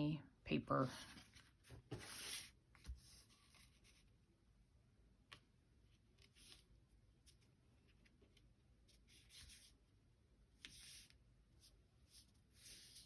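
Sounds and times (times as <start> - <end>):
paper rustling: 0.9 - 4.1.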